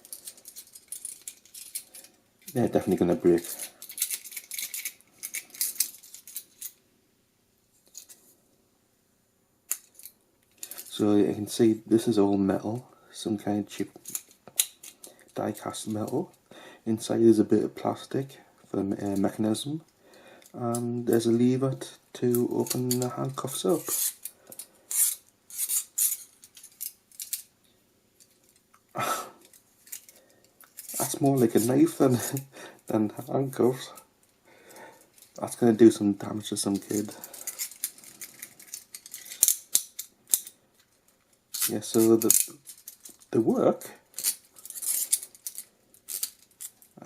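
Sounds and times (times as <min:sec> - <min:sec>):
metal handcuffs clicking and rattling: 0:00.0 - 0:06.8, 0:09.7 - 0:10.9, 0:14.0 - 0:15.4, 0:22.3 - 0:27.5, 0:29.4 - 0:32.5, 0:35.0 - 0:35.4, 0:36.6 - 0:43.4, 0:44.1 - 0:47.0.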